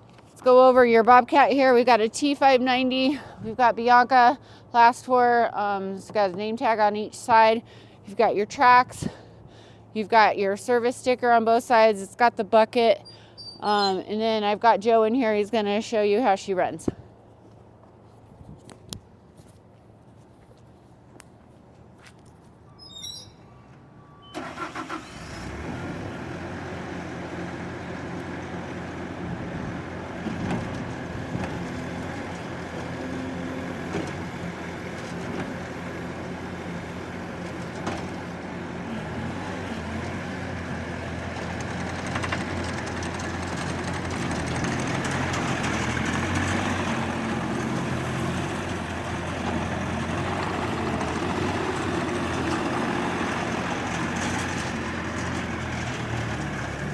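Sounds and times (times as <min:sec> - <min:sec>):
diesel engine starting and running: 0:22.7 - 0:56.9.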